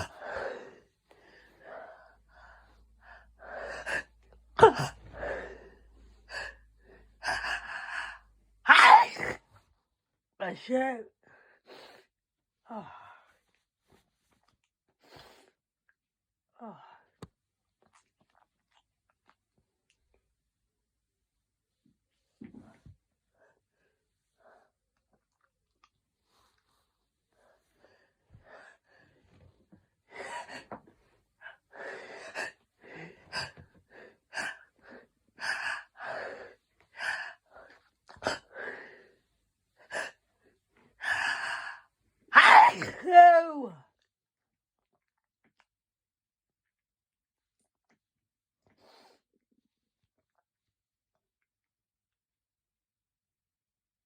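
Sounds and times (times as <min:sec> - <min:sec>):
person sneezing: 0:04.6 - 0:05.2, 0:08.7 - 0:09.4, 0:42.4 - 0:43.6
gasping in-breaths: 0:04.9 - 0:08.3
person making breathy vocal sounds: 0:42.4 - 0:43.8.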